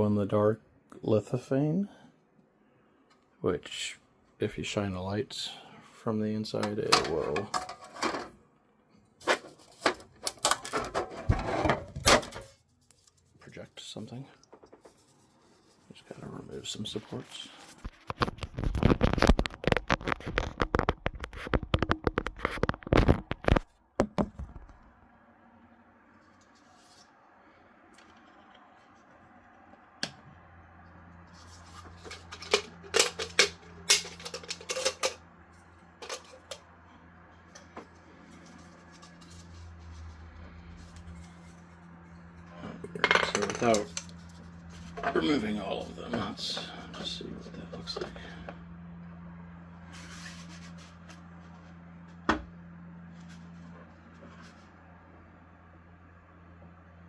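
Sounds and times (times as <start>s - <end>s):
hands rustling and scraping plastic: 14.5s - 23.7s
low machine hum: 24.8s - 57.0s.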